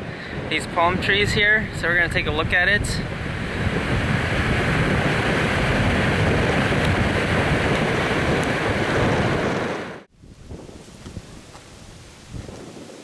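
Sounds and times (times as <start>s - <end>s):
wind buffeting microphone: 0.0s - 13.0s
surf: 0.4s - 10.1s.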